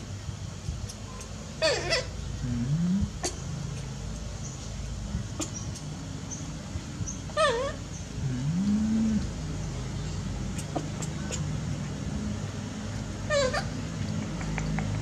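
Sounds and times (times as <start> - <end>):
steady low hum: 0.0 - 15.0
high-pitched animal call: 1.6 - 3.5, 7.4 - 9.3, 13.3 - 13.8
faint clicks: 14.1 - 15.0.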